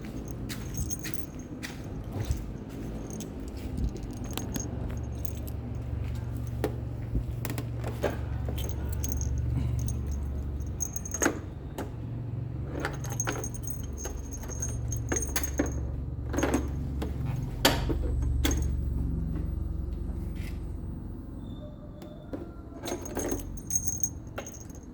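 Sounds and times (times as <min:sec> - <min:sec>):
keys jangling: 0:00.0 - 0:07.0, 0:08.0 - 0:11.6, 0:12.7 - 0:17.0, 0:18.3 - 0:18.9, 0:22.8 - 0:24.9
steady low hum: 0:00.0 - 0:21.6.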